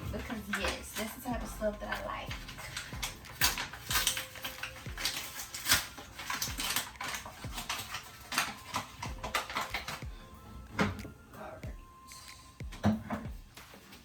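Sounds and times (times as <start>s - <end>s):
kitchen containers and utensils clicking: 0.0s - 14.0s.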